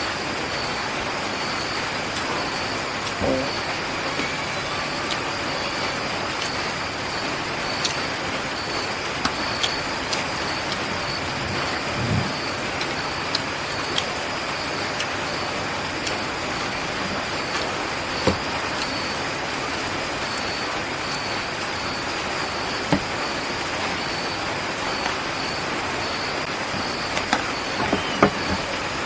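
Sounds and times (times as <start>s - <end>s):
eating clicks and smacks: 6.3s - 6.8s, 7.6s - 14.2s, 16.0s - 19.0s.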